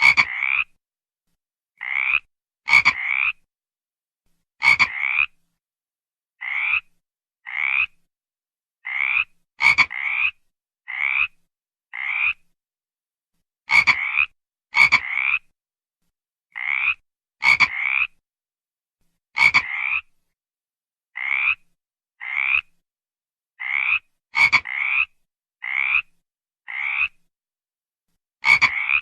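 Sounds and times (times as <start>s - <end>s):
frog croaking: 0.0s - 0.8s, 1.8s - 3.5s, 4.6s - 5.4s, 6.4s - 8.0s, 8.8s - 12.4s, 13.7s - 15.5s, 16.5s - 18.2s, 19.4s - 20.1s, 21.2s - 21.6s, 22.2s - 22.7s, 23.6s - 27.2s, 28.4s - 29.0s.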